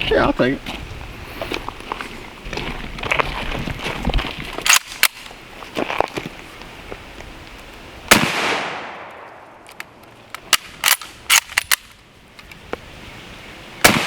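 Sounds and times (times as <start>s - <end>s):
rifle shots echoing: 8.1s - 9.5s
sharp rifle bolt clicks: 9.6s - 11.9s.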